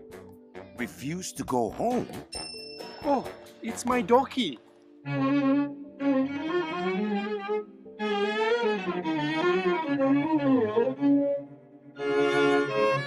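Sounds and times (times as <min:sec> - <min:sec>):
violin and cello melody: 0:03.1 - 0:13.0.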